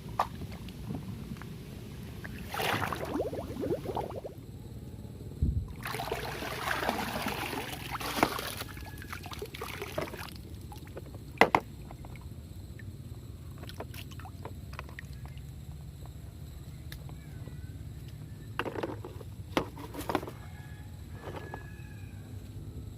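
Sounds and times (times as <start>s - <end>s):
water splashing and pouring: 2.2s - 4.4s, 5.8s - 10.9s.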